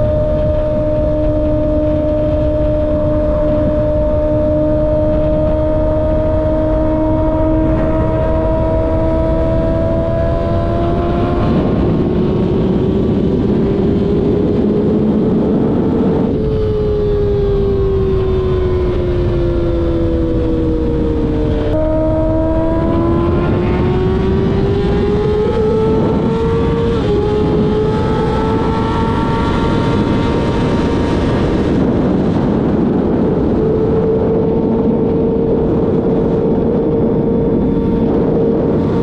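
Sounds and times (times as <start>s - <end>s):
heavy wind noise: 0.0s - 39.0s
motorcycle engine revving: 0.0s - 39.0s.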